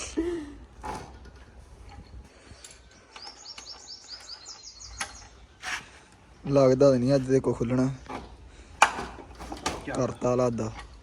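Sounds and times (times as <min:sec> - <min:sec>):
small bird chirping: 0:02.8 - 0:05.6.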